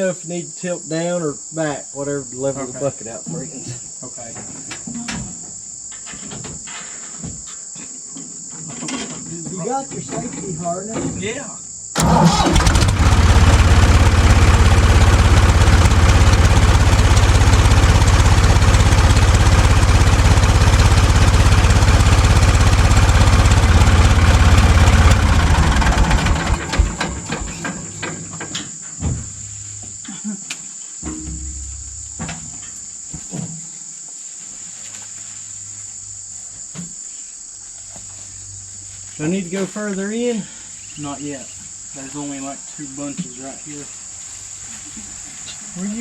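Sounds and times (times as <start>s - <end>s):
crickets chirping: 0.0s - 46.0s
backhoe engine running: 12.0s - 28.0s, 31.1s - 32.4s.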